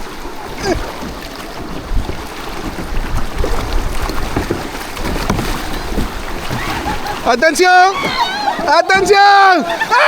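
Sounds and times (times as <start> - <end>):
wind buffeting microphone: 0.0 - 9.9
water noise: 0.0 - 10.0.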